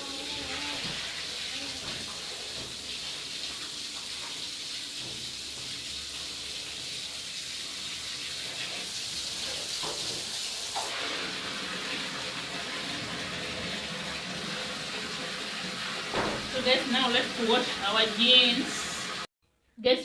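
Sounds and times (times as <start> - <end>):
water rushing: 0.0 - 4.0, 7.8 - 19.3.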